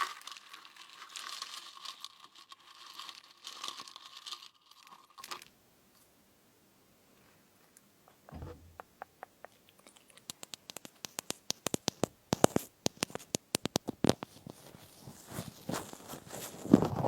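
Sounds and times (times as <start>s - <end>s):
crunching of fruit chips chewed: 0.0s - 5.5s.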